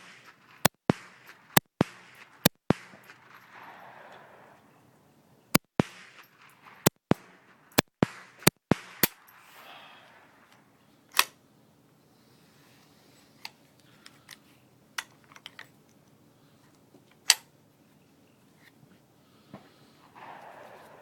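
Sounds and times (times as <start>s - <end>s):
small gun shots: 0.0s - 4.8s, 5.5s - 11.4s, 19.6s - 21.0s
ringing gunshot crack: 0.0s - 5.0s, 5.6s - 11.3s, 19.6s - 21.0s.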